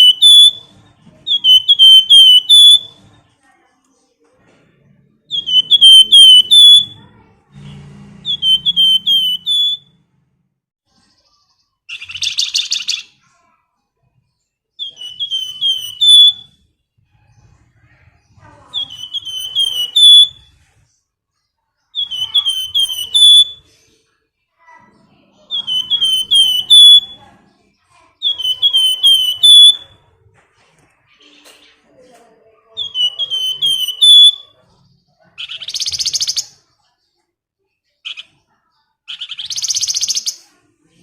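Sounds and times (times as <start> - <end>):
songbird whistled calls: 0.0 - 3.0, 5.3 - 7.0, 8.2 - 9.9, 14.8 - 16.6, 18.7 - 20.6, 21.9 - 23.8, 25.5 - 27.2, 28.2 - 30.0, 32.8 - 34.6, 35.4 - 36.6, 39.1 - 40.4.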